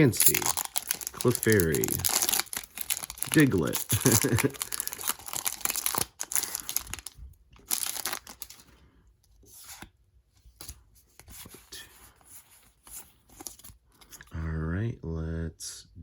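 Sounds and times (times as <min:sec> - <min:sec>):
foil wrapper crinkling and tearing: 0:00.0 - 0:08.6.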